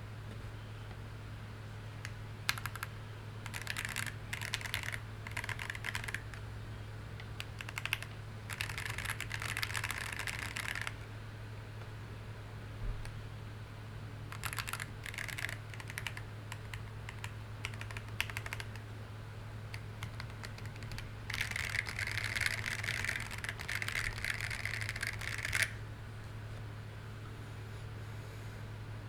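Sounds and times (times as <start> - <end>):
steady low hum: 0.0 - 29.0
mechanical keyboard typing: 2.0 - 6.4, 7.2 - 11.0, 14.3 - 18.9, 19.7 - 25.8.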